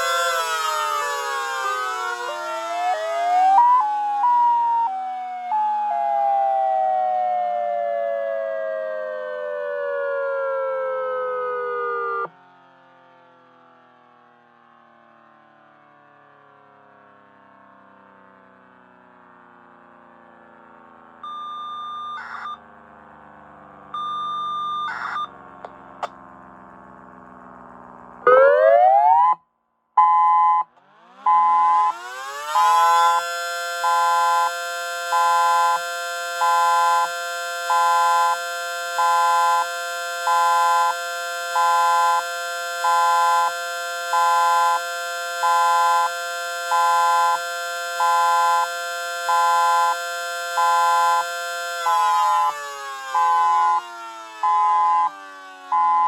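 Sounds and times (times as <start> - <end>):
pulsed electronic siren: 0.0 - 14.5, 18.8 - 29.4, 30.0 - 56.0
short radio data tones: 21.3 - 22.6, 24.0 - 25.4.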